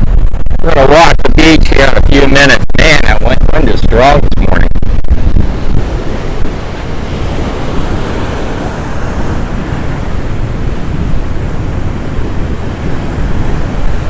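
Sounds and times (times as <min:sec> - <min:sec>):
ocean surf washing: 0:00.0 - 0:14.0
wind buffeting microphone: 0:00.0 - 0:14.0.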